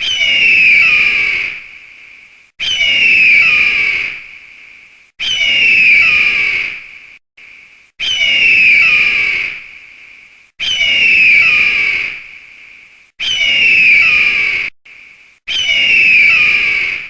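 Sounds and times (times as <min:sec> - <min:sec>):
eagle screaming: 0:00.0 - 0:01.6, 0:02.6 - 0:04.2, 0:05.2 - 0:06.9, 0:08.0 - 0:09.6, 0:10.6 - 0:12.2, 0:13.2 - 0:14.7, 0:15.5 - 0:17.0.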